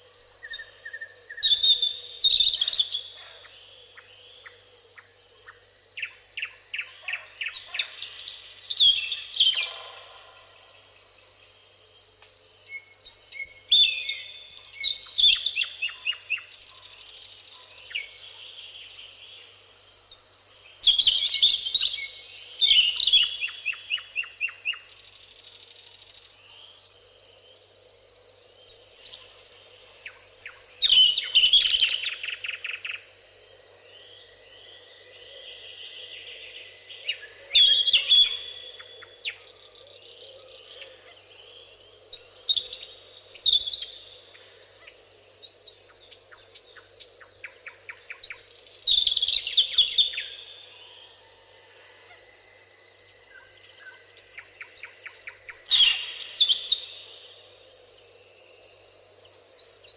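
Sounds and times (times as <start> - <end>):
songbirds singing: 0.0 - 59.9.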